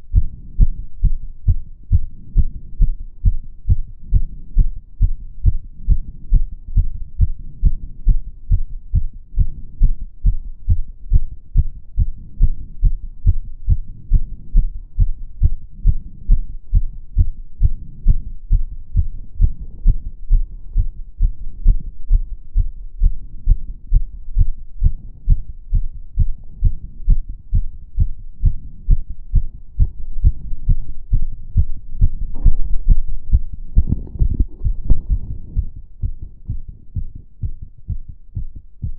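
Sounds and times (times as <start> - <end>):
fast heartbeat: 0.0 - 38.9
low rumble: 0.0 - 38.9.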